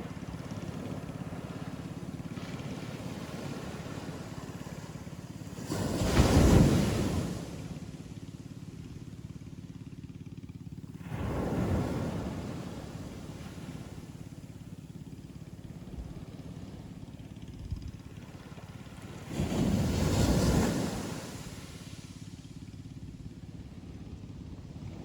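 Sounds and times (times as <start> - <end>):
surf rumbling on beach: 0.0 - 8.0, 11.0 - 14.4, 18.6 - 22.3.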